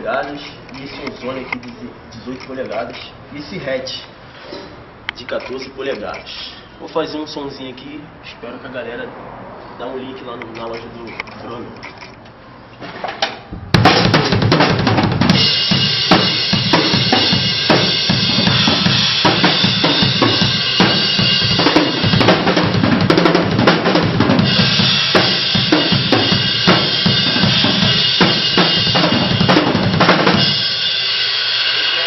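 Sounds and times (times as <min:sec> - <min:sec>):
bass drum: 0:13.5 - 0:30.7
snare drum: 0:13.8 - 0:30.6
cymbal wash: 0:15.3 - 0:22.5, 0:24.4 - 0:32.0.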